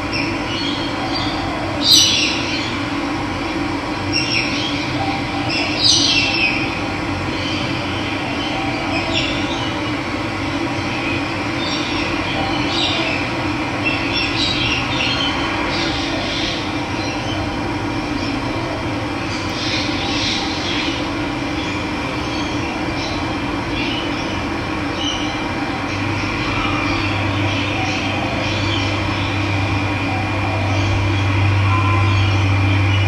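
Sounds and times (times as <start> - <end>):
birds chirping: 19.3 - 33.0.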